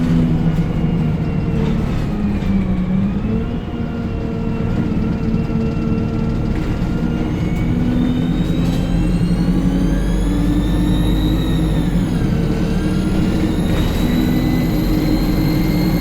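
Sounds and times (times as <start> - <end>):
bus engine under load: 0.0 - 16.0
turbocharger whistle: 8.1 - 16.0.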